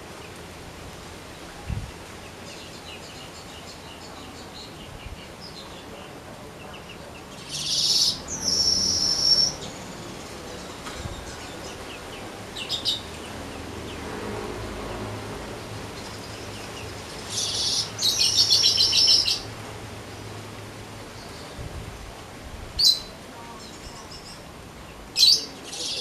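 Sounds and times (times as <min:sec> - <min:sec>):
young bird singing: 0:02.3 - 0:13.3, 0:16.0 - 0:19.4, 0:22.8 - 0:24.5, 0:25.1 - 0:26.0.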